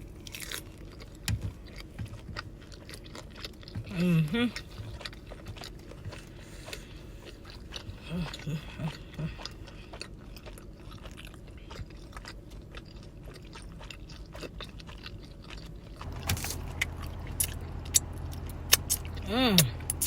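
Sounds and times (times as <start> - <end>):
close-up chewing: 0.0 - 20.0
steady low hum: 0.0 - 20.0.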